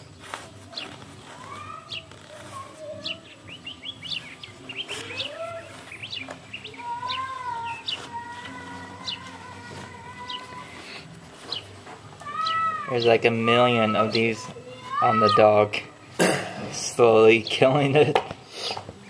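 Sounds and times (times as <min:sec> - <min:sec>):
small birds chirping: 0:00.0 - 0:19.0
rising gliding bird calls: 0:00.8 - 0:15.6.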